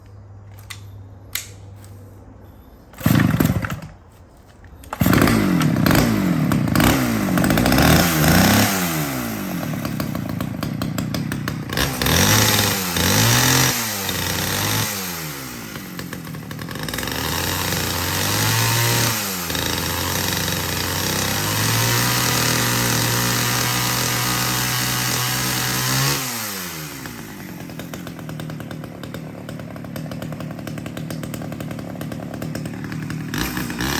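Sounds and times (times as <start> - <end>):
chainsaw revving: 2.9 - 4.0, 4.8 - 33.9.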